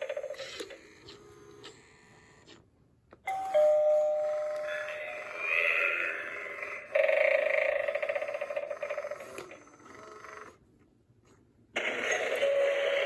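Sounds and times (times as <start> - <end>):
electronic doorbell buzzing ring: 3.3 - 5.2.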